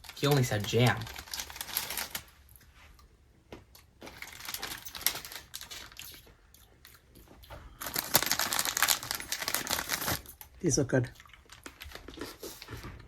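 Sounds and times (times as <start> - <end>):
snack packaging crinkling: 0.0 - 2.6, 3.8 - 7.2, 7.8 - 10.5, 11.1 - 13.0.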